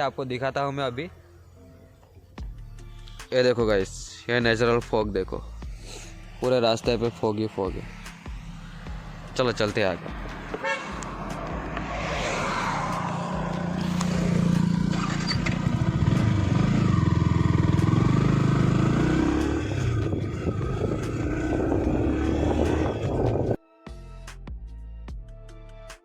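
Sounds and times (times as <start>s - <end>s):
road and wind noise: 4.4s - 23.6s
motorcycle engine revving: 5.7s - 23.6s.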